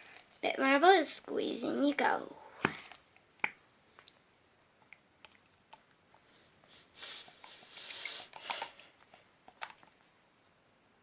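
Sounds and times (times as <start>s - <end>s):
paint spluttering with air hiss: 6.7s - 9.0s.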